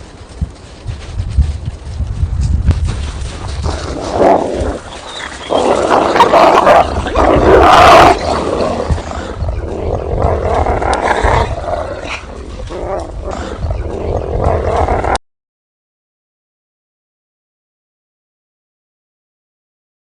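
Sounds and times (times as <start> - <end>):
low rumble: 0.0 - 15.2
wolves growling and snarling: 3.2 - 15.2.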